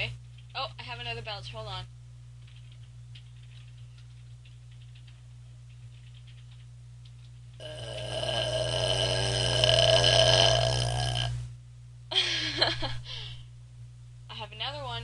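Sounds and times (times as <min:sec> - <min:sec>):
woman belching loudly: 0:07.6 - 0:11.3.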